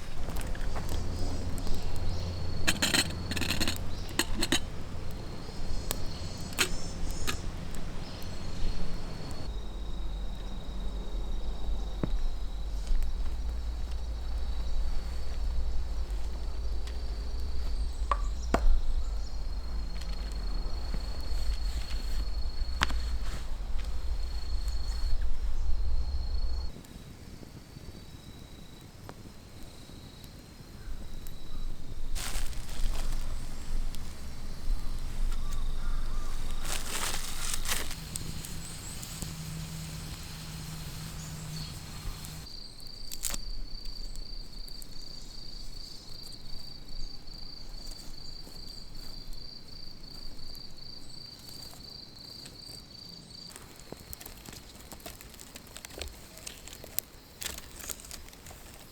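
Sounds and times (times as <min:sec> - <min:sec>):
low rumble: 0:00.0 - 0:26.7
crickets trilling: 0:00.0 - 0:58.9.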